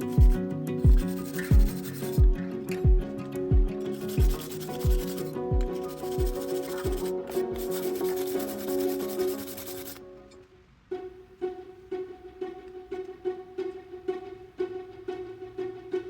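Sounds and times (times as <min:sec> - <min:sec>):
music with deep bass beat: 0:00.0 - 0:07.2
metal brush scrubbing rust: 0:01.0 - 0:02.2, 0:03.9 - 0:10.0.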